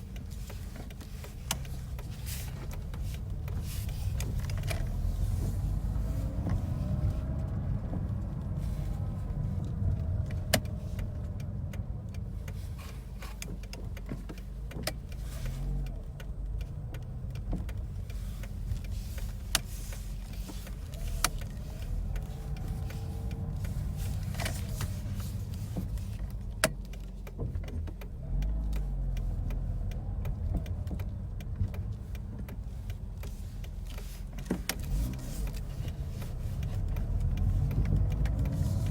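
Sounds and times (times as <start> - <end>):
sharp clicks: 9.6 - 38.9.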